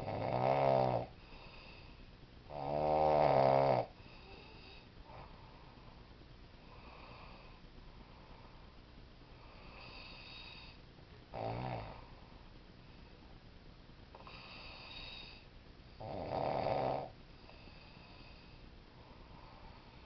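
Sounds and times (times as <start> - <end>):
man snoring: 0.0 - 1.8, 2.5 - 5.2, 9.4 - 12.0, 16.0 - 18.4
quiet breaths: 0.0 - 20.0.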